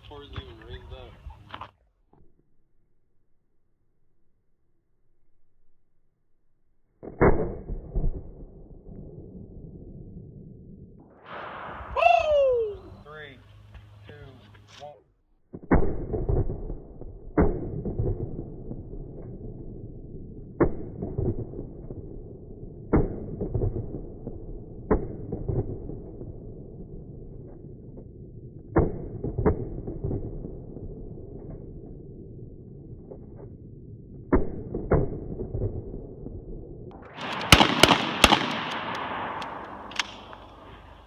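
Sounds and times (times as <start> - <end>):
muffled gunshots with echo: 37.0 - 41.0.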